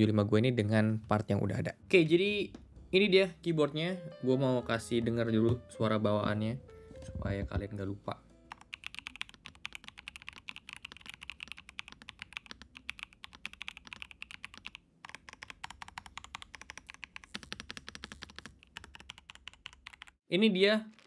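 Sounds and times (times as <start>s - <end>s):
mechanical keyboard typing: 8.5s - 20.2s.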